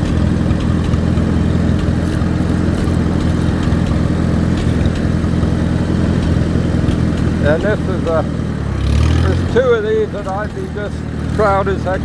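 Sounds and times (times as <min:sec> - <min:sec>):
tractor engine running: 0:00.0 - 0:12.0.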